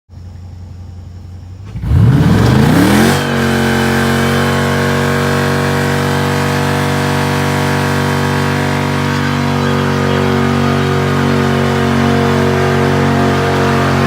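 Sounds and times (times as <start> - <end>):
low steady hum: 0.1 - 5.1
car engine starting and idling: 0.1 - 14.0.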